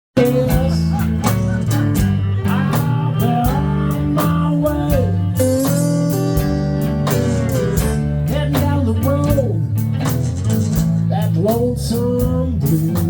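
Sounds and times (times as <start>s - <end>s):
blues band playing: 0.1s - 13.0s
guitar with bent sliding notes: 0.2s - 13.0s.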